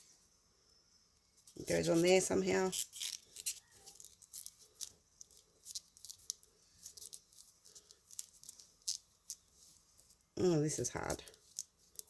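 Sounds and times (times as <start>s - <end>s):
plastic pieces clicking and rubbing: 1.9s - 10.3s, 11.0s - 12.0s.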